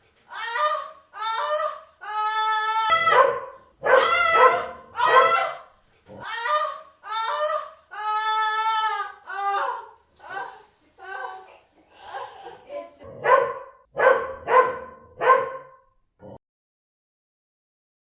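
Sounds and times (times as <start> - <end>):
puppy whining: 2.9 - 6.3.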